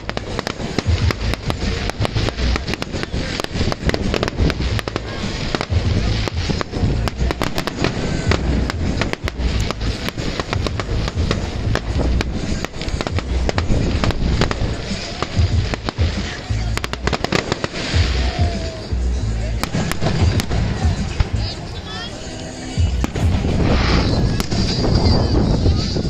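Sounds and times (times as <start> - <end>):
deep booming rumbles: 0.0 - 21.7, 22.8 - 26.0
fireworks cracks and bangs: 0.0 - 26.0.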